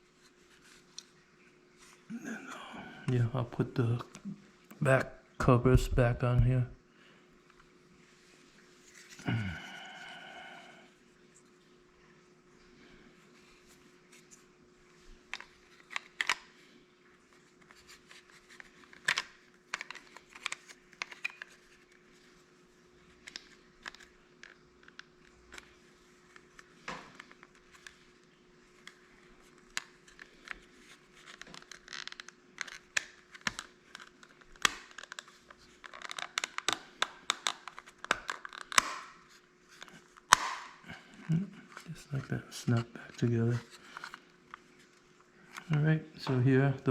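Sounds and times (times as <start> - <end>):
plastic covers snapping together: 28.8 - 41.8
plastic covers clicking and tapping: 31.2 - 39.2.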